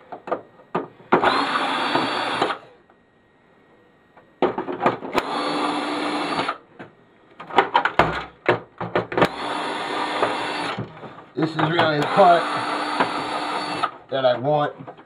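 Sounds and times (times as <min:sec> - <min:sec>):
cordless drill whirring: 0:01.2 - 0:02.7, 0:05.2 - 0:06.6, 0:09.2 - 0:10.8, 0:11.9 - 0:14.0
clicks and knocks of handling parts: 0:06.8 - 0:09.3, 0:14.7 - 0:15.0.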